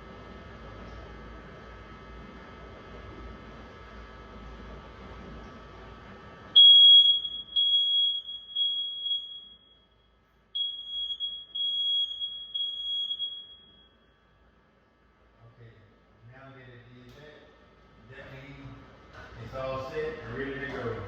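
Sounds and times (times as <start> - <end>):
smoke detector alarm beeps: 6.5 - 14.2.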